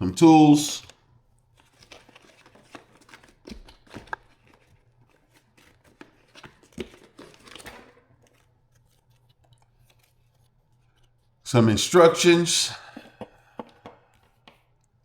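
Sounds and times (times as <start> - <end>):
packaging rustling: 0.6 - 11.4.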